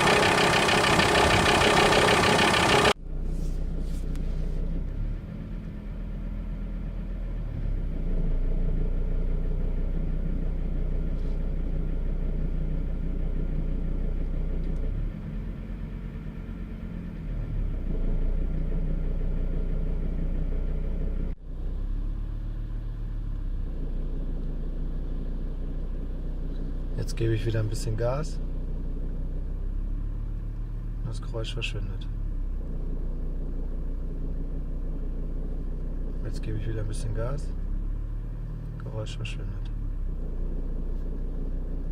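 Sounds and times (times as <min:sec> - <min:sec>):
diesel engine running: 0:00.0 - 0:41.9
extra engine noise at idle: 0:00.0 - 0:41.9.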